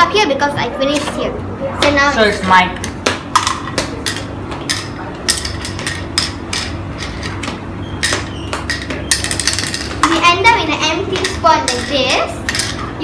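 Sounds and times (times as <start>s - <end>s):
game pieces clicking into board: 2.8s - 10.3s.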